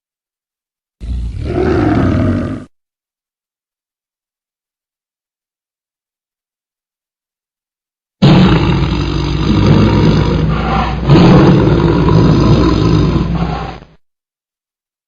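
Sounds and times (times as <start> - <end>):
tiger roaring: 1.0 - 2.7, 8.2 - 14.0.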